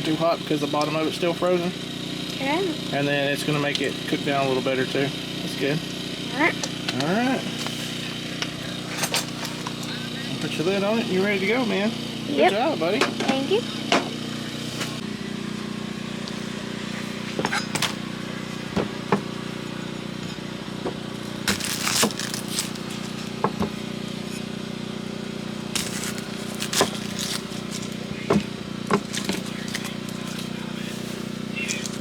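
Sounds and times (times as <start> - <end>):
low mechanical hum: 0.0 - 32.0
meat popping and crackling: 21.2 - 23.5, 25.8 - 30.6.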